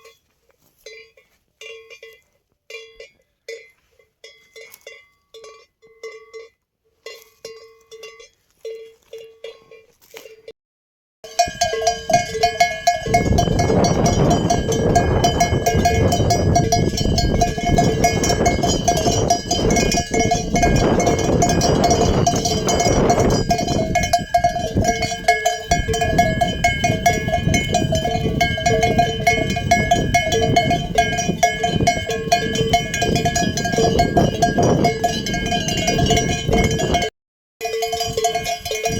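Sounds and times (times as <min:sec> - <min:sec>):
sheep bells clanking: 0:00.0 - 0:10.5, 0:11.2 - 0:38.9.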